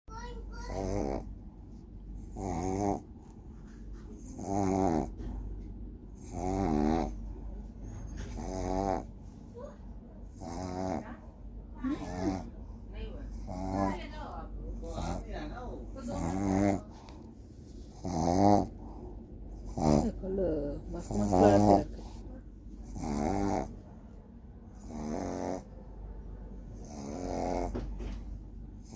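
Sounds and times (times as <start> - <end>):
pet snoring loudly: 0.5 - 1.3, 2.2 - 3.1, 4.2 - 5.3, 6.2 - 7.2, 8.2 - 9.1, 10.3 - 11.1, 11.8 - 12.5, 13.3 - 14.0, 14.9 - 15.3, 16.0 - 17.2, 17.8 - 19.0, 19.6 - 20.3, 21.0 - 22.2, 22.8 - 23.8, 24.8 - 25.7, 26.8 - 27.9
quiet breathing: 16.7 - 18.0, 21.2 - 22.6.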